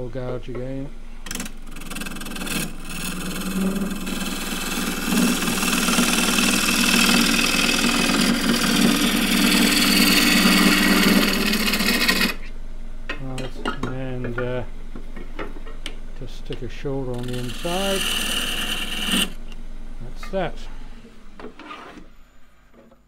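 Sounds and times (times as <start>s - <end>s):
lathe humming: 1.3s - 12.5s, 17.1s - 19.4s.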